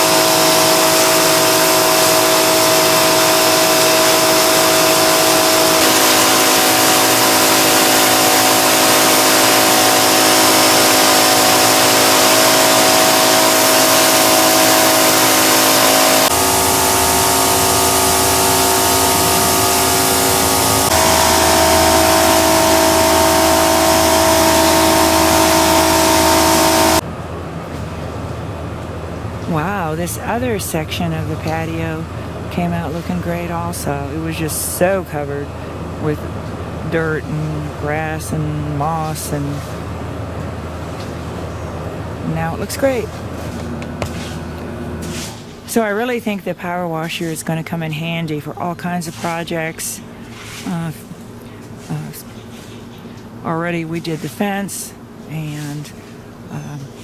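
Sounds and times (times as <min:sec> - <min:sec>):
high-pressure water jet hissing: 0:00.0 - 0:27.0
pressure washer motor whine: 0:00.0 - 0:47.4.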